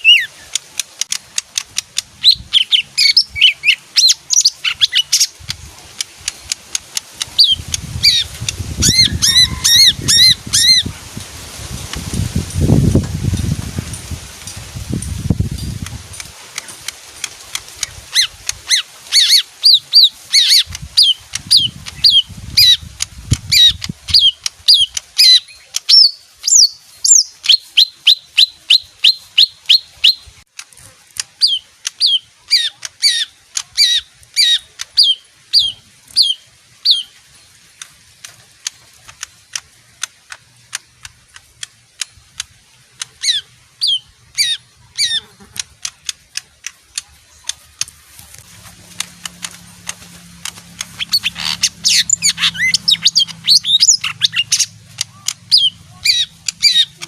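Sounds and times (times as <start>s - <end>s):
songbird whistled calls: 0.0s - 0.6s, 2.2s - 5.4s, 7.2s - 10.9s, 23.5s - 30.3s, 31.4s - 37.2s, 43.2s - 45.3s, 50.8s - 57.0s.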